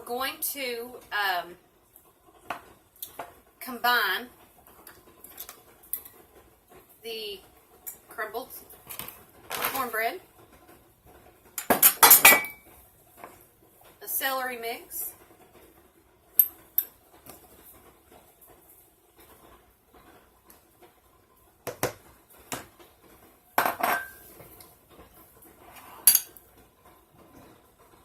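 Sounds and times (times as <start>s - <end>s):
dishes and utensils clinking: 11.6s - 12.6s, 23.6s - 24.3s, 25.9s - 26.4s.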